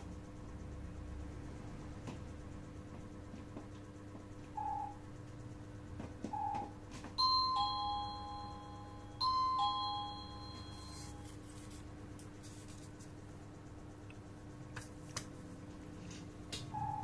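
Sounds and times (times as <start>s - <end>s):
doorbell ding-dong chime: 7.2s - 11.2s.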